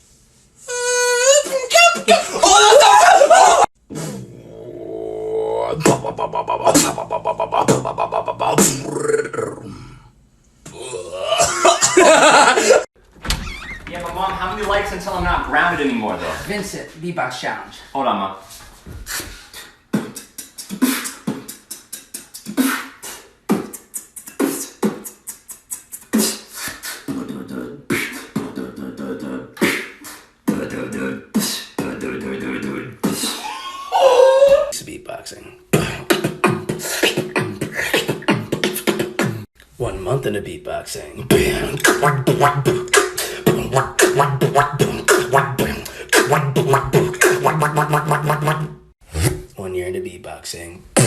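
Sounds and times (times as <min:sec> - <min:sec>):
person beatboxing: 0:03.9 - 0:04.4, 0:05.6 - 0:09.6, 0:19.1 - 0:33.4, 0:35.7 - 0:39.5, 0:41.2 - 0:49.5.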